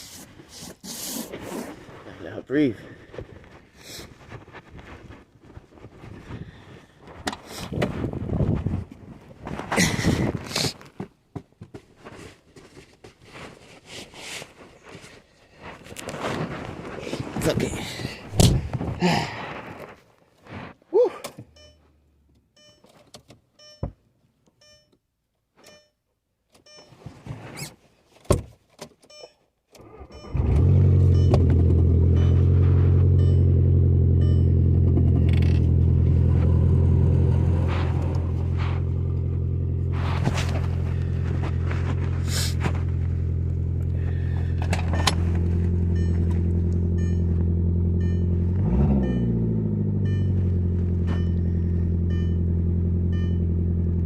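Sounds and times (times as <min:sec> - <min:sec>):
car engine starting and idling: 0:29.8 - 0:54.0.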